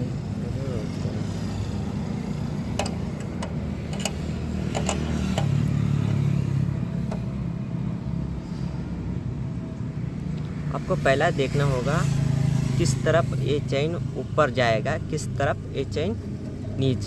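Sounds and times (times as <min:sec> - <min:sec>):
spanner clicking on bolt: 0:02.6 - 0:06.2.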